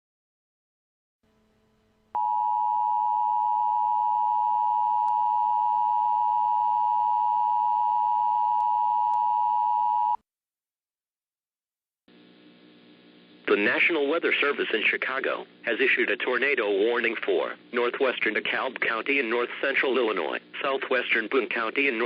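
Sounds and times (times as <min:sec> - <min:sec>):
two-tone alarm tone: 0:02.2 - 0:10.2.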